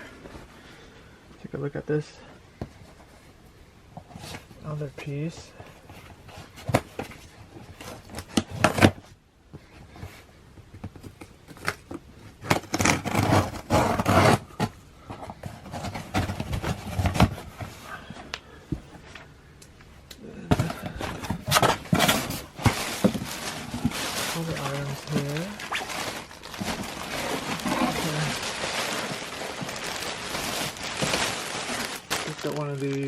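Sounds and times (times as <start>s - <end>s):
clothing rustling: 20.6s - 33.0s.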